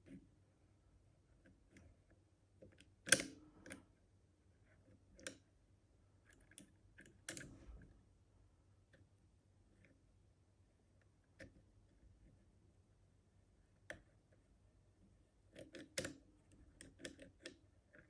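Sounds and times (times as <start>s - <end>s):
metallic lock picking clicks: 3.0s - 3.8s, 15.5s - 16.2s.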